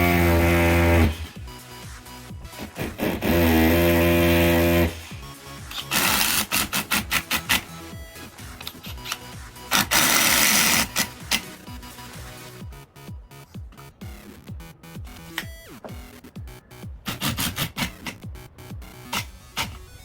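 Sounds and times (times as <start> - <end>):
small power tool motor running: 0.0 - 1.4, 3.0 - 5.1, 9.0 - 11.5
background music: 0.0 - 20.0.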